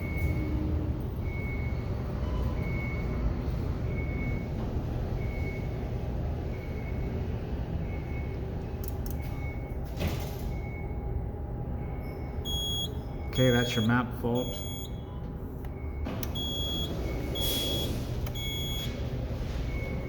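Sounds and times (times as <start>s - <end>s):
short high electronic beeps: 12.5s - 15.0s.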